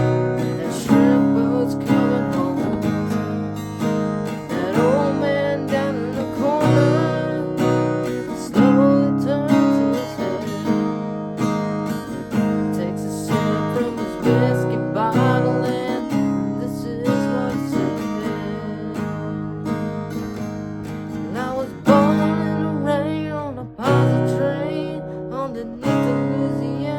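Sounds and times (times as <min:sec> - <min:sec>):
lead guitar melody with bending notes: 0:00.0 - 0:26.9
strummed acoustic guitar: 0:00.0 - 0:26.9.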